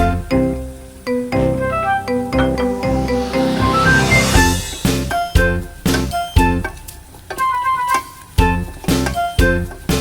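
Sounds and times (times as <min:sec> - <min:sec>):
upbeat background music: 0:01.1 - 0:06.6.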